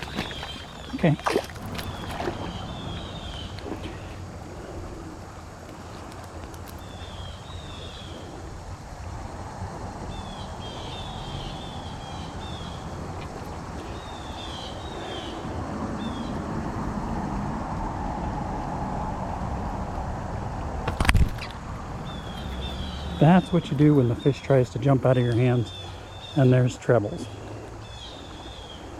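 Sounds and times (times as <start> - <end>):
bird chirping: 0.0 - 4.3, 20.9 - 28.9
wind rumble: 0.0 - 28.9.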